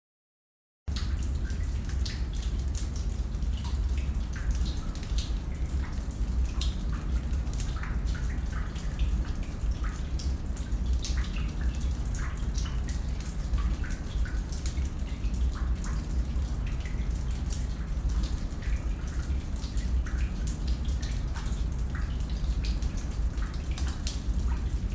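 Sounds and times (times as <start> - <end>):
water drops plinking into pools: 0.9 - 24.9.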